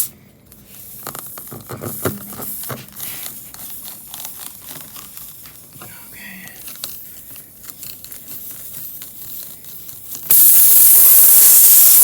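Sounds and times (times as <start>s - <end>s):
reamer rasping in tire: 8.5s - 12.0s.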